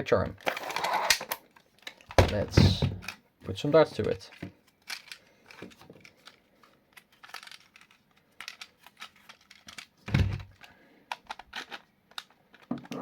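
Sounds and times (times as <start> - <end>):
light plastic clicks and rustles: 3.9 - 13.0.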